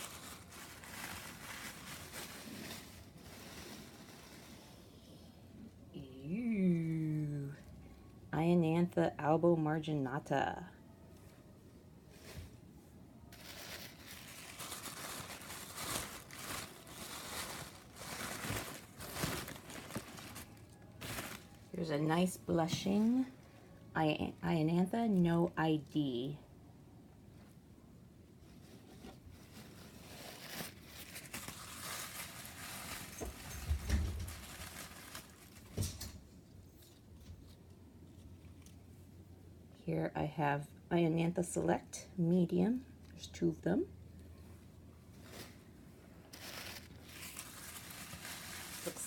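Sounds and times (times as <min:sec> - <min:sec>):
packaging crinkling: 0:00.0 - 0:04.4, 0:13.3 - 0:21.8, 0:29.4 - 0:36.2, 0:46.3 - 0:49.0.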